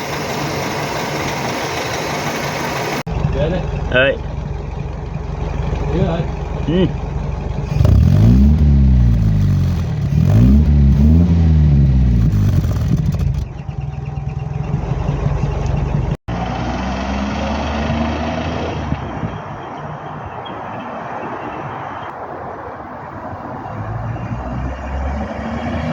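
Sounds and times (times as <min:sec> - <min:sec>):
petrol engine revving and idling: 0:00.0 - 0:19.4, 0:23.7 - 0:25.9.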